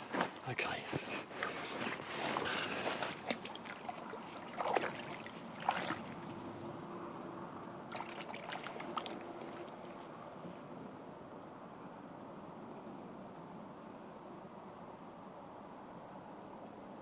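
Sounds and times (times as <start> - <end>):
faint steady hum: 0.0 - 17.0
water splashing and dripping: 2.8 - 6.4, 7.9 - 10.4.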